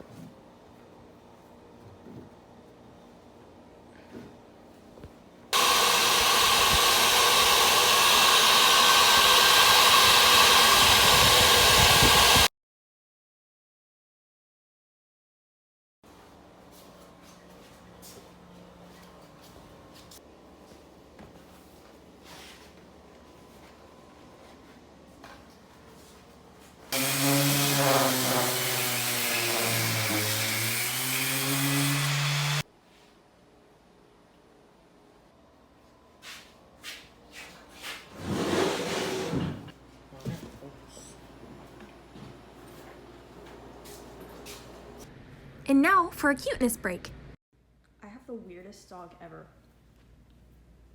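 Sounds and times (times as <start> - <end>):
power woodworking tool whirring: 5.6 - 12.5, 26.9 - 32.6.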